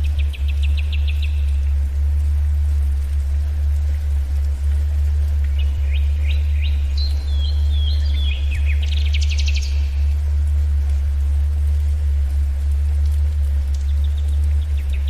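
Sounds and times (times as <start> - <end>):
songbird chirping and trilling: 0.0 - 1.7, 5.0 - 10.6, 13.7 - 15.0
steady deep low tone: 0.0 - 15.0.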